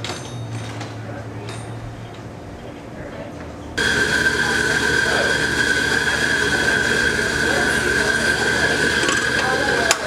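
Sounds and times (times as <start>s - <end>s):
coffee machine motor whining: 3.8s - 10.0s.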